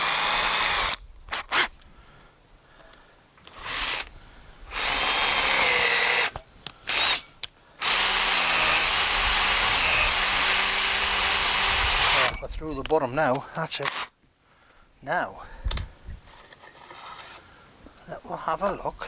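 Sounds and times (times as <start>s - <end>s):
power drill boring into metal: 0.0s - 1.7s, 3.4s - 4.1s, 4.7s - 12.4s, 13.8s - 14.1s.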